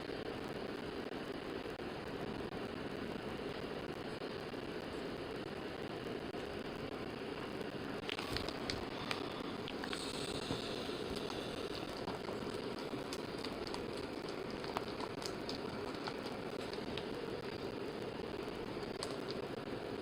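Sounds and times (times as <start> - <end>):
steady background hum: 0.0 - 20.0
plastic wrap and cardboard crackling: 8.0 - 19.7.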